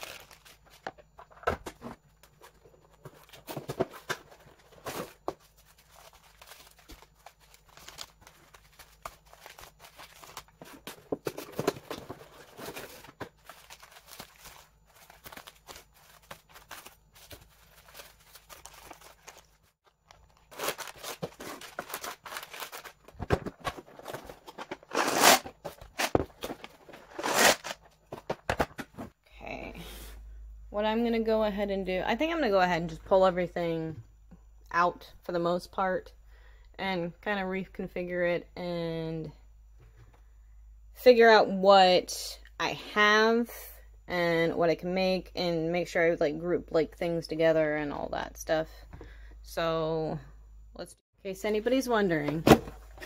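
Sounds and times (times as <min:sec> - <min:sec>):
packaging crinkling and tearing: 0:00.0 - 0:00.9, 0:05.5 - 0:27.9
packaging rustling and clicking: 0:00.0 - 0:29.1.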